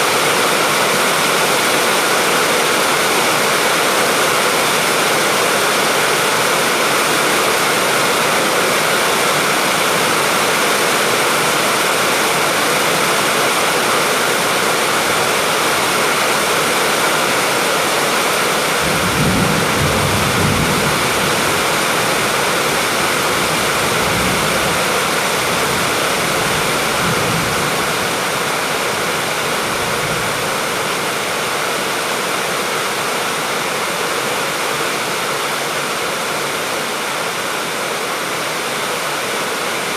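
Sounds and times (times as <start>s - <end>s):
heavy rain pouring: 0.0s - 39.9s
thunder rumbling: 18.8s - 28.4s.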